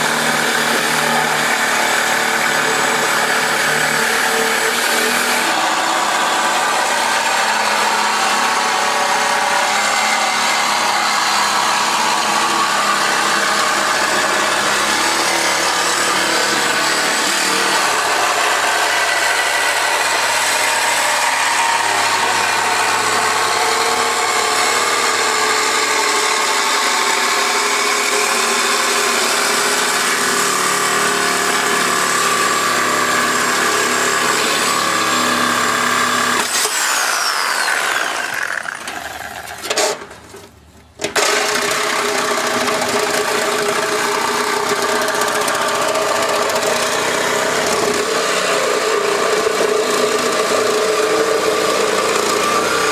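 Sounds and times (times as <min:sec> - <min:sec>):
power tool running with high whine: 0:00.0 - 0:39.5, 0:41.1 - 0:52.9.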